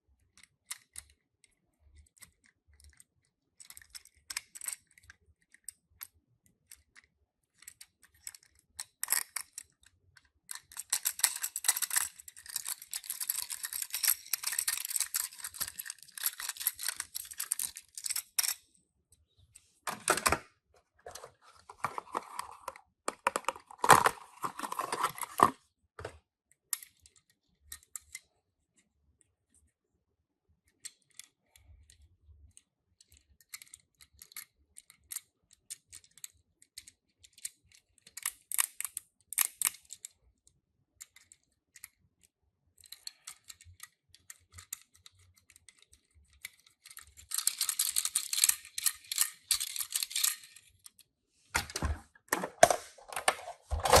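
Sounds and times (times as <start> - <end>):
toy cars clicking and rattling: 0.2 - 18.6, 21.0 - 26.1, 30.7 - 40.2, 41.0 - 51.1, 51.7 - 54.0.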